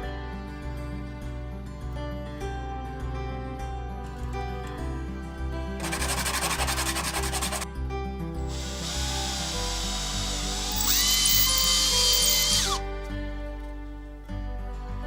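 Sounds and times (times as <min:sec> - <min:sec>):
background music: 0:00.0 - 0:15.0
cordless drill whining: 0:05.8 - 0:07.6, 0:08.4 - 0:12.9.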